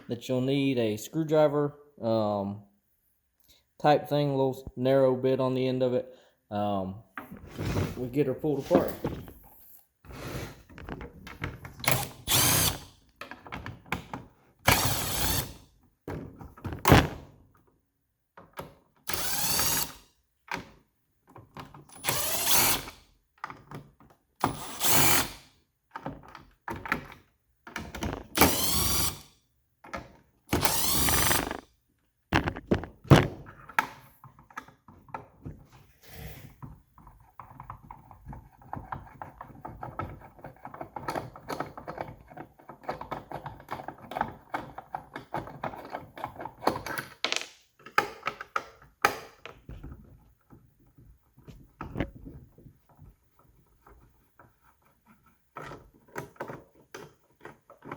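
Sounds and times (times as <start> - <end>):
cordless drill backing out screws: 11.8 - 12.8, 14.7 - 15.5, 19.1 - 20.0, 28.1 - 29.2, 30.5 - 31.6
plastic housing clicks and knocks: 32.4 - 35.5, 37.4 - 50.6.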